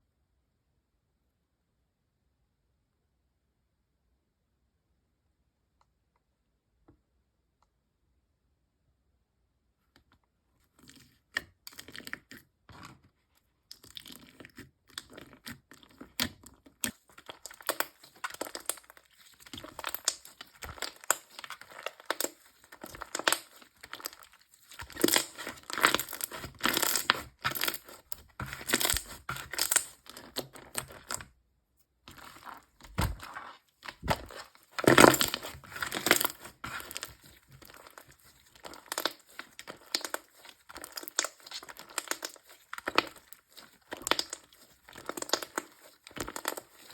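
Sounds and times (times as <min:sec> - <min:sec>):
slime squished by hand: 0:13.7 - 0:31.3, 0:32.1 - 0:46.9.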